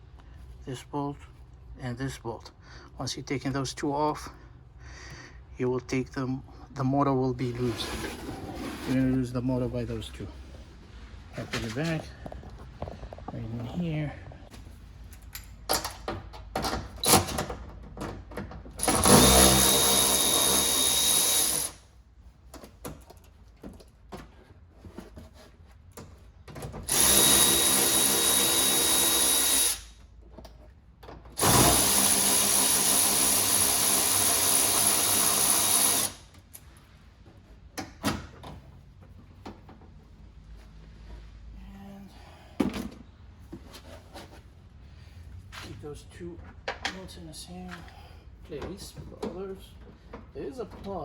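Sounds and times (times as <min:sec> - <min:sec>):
power drill running: 0:18.8 - 0:21.8, 0:26.9 - 0:29.9, 0:31.4 - 0:36.2.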